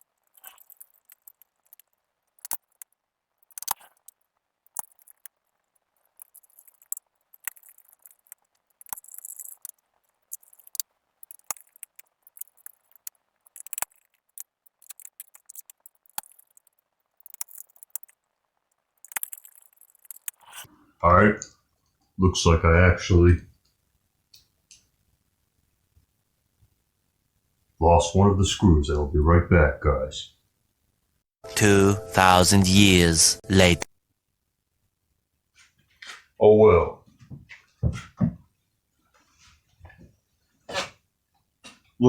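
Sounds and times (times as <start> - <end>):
laptop parts clicking and rattling: 0.0 - 20.7.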